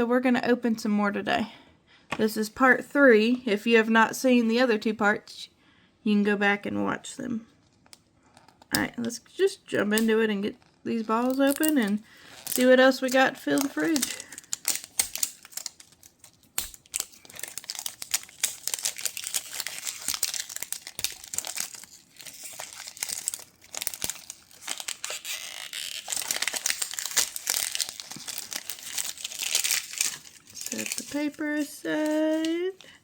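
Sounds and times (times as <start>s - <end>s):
wrapping crinkling and tearing: 10.6s - 33.0s.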